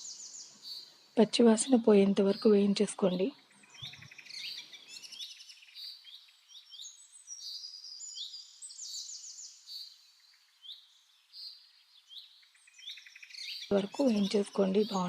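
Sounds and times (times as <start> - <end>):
small birds chirping: 0.0 - 15.0.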